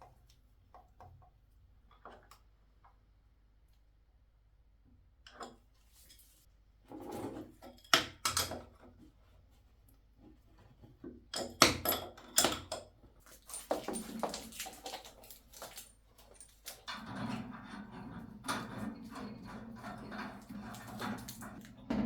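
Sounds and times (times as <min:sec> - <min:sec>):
hand tools and fittings clattering: 0:11.3 - 0:22.0.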